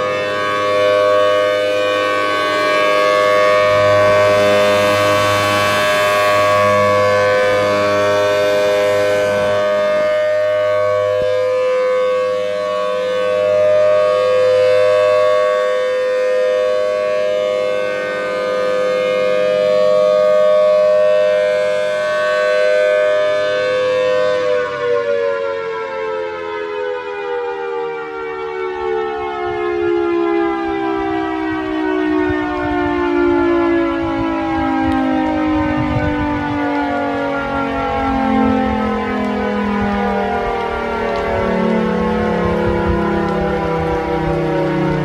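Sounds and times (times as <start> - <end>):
dual-tone warning siren: 0.0 - 45.0.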